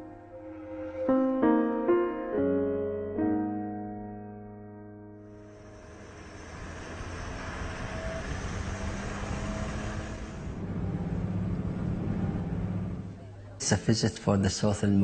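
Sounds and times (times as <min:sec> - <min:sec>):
road noise: 0:05.2 - 0:13.6
vehicle engine hum: 0:05.3 - 0:13.6.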